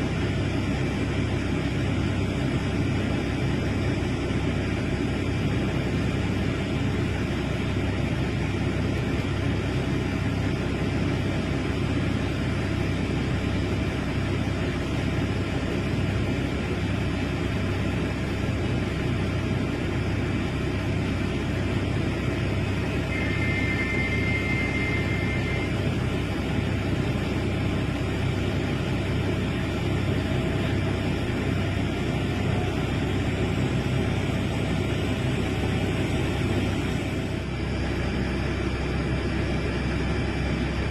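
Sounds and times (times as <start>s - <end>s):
diesel engine droning: 0.0s - 40.9s.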